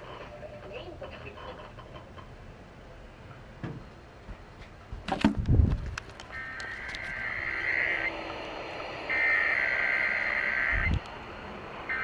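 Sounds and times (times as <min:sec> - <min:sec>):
radio hiss: 0:00.0 - 0:02.3, 0:06.0 - 0:12.0
sharp clicks: 0:05.1 - 0:11.2
two-tone digital data burst: 0:06.4 - 0:08.2, 0:09.0 - 0:10.9.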